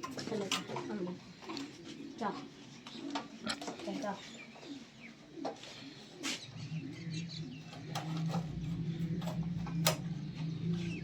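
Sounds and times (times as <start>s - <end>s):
low machine hum: 6.4s - 11.0s.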